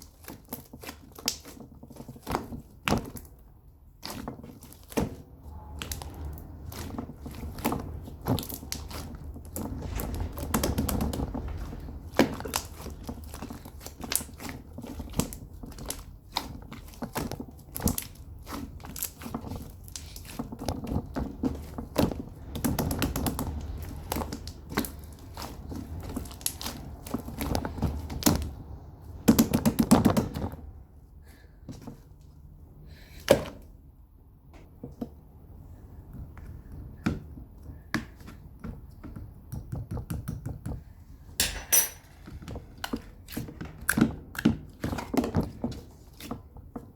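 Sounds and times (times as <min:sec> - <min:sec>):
slime squelching: 0:00.0 - 0:30.5.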